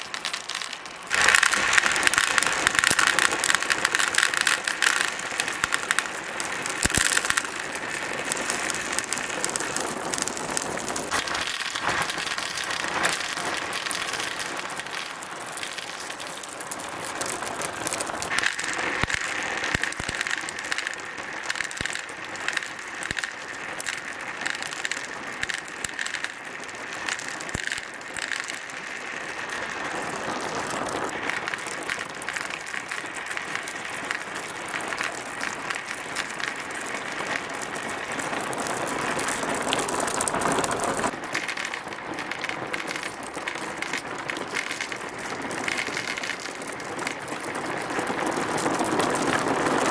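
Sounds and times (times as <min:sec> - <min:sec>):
marbles clicking together: 0:00.0 - 0:49.9
marbles rolling on plastic track: 0:00.0 - 0:49.9.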